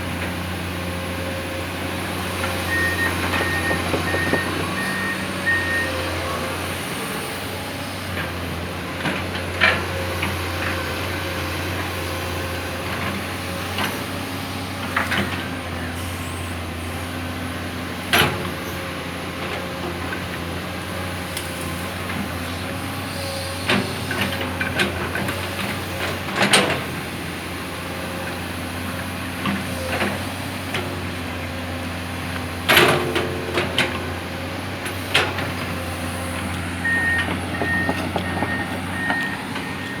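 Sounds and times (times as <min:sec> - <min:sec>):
diesel engine idling: 0:35.6 - 0:40.0.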